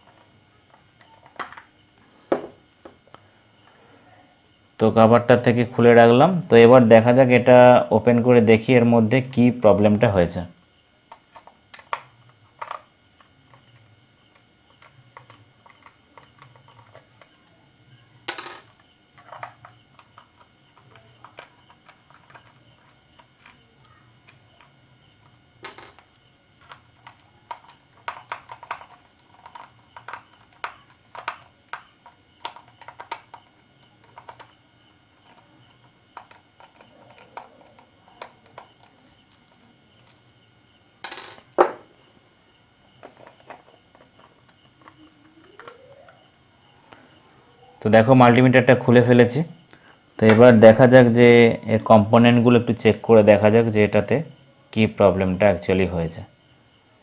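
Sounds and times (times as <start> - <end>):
plastic case clicks and knocks: 41.1 - 41.9.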